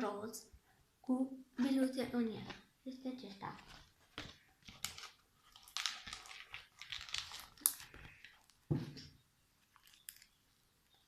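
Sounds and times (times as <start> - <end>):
beaded slime crunching and crackling: 4.6 - 8.7, 9.6 - 10.4.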